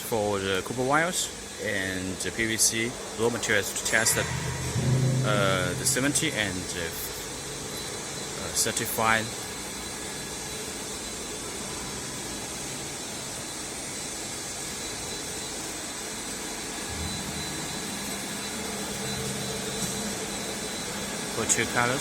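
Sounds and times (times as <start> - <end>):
faint high whine: 3.9 - 7.2
machinery running: 4.0 - 7.0
low hum: 4.0 - 7.1.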